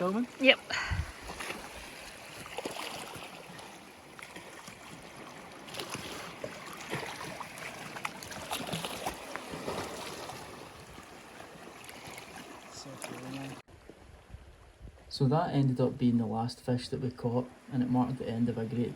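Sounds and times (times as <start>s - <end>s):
water splashes and drips: 0.0s - 13.9s
water lapping and trickling: 0.0s - 15.1s, 15.8s - 18.9s.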